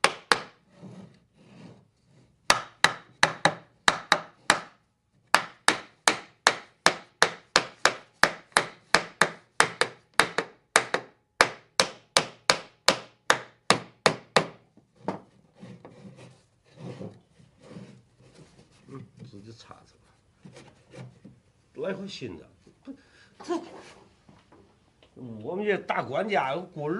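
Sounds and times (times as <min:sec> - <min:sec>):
sharp blows on wood: 0:00.0 - 0:00.6, 0:02.5 - 0:14.6
rubbing on wood: 0:15.1 - 0:19.4, 0:20.4 - 0:21.4.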